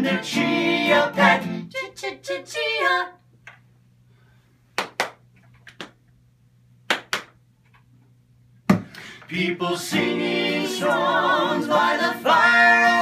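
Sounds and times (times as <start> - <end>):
double hand claps: 4.8 - 6.0, 6.9 - 7.4.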